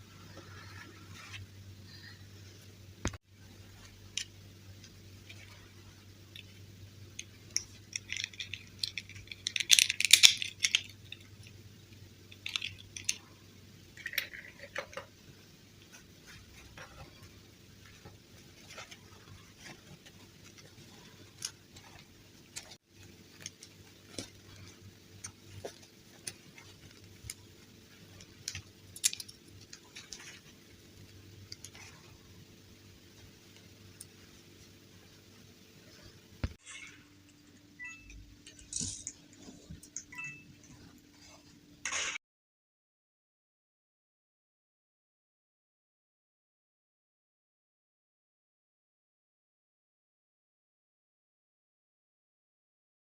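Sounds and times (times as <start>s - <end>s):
faint steady hum: 0.0s - 42.1s
plastic parts clicking and tapping: 7.2s - 11.5s, 12.3s - 13.2s, 14.0s - 15.2s, 18.7s - 30.5s
plastic rattling clatter: 7.6s - 11.3s.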